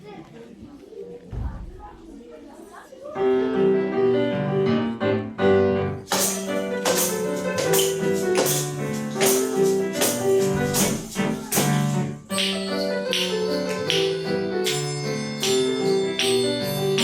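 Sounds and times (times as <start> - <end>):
piano playing lively tune: 3.2 - 17.0
hand percussion shakers and jingles: 6.0 - 17.0.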